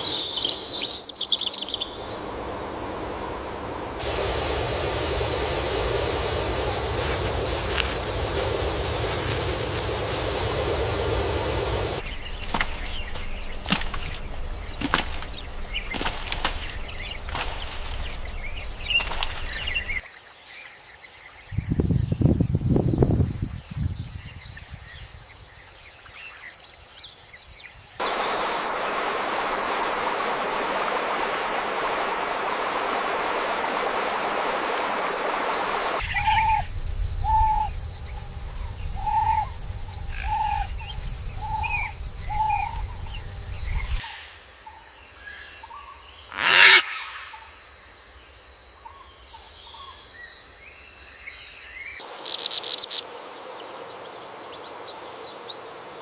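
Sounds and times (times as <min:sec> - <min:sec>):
even rushing noise: 0:01.8 - 0:12.4, 0:28.0 - 0:44.0
low rumble: 0:01.8 - 0:12.5.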